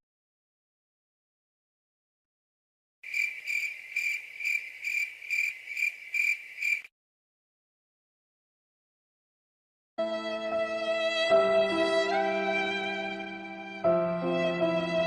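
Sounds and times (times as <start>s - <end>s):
cricket chirping: 3.0s - 6.9s.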